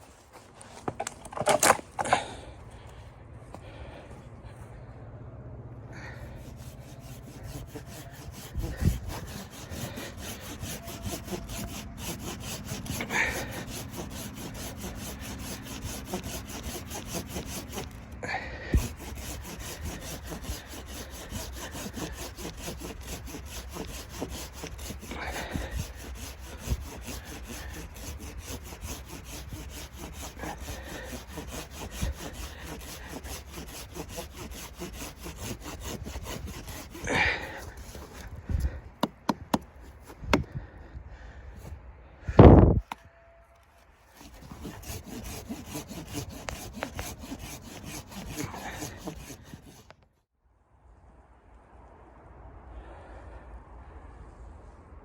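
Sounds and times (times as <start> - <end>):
hand saw cutting wood: 0.0 - 2.9, 5.9 - 40.5, 44.0 - 50.1.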